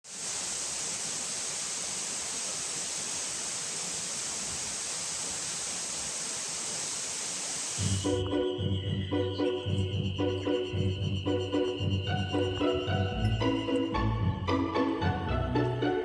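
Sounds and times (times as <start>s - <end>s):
background music: 8.0s - 16.0s.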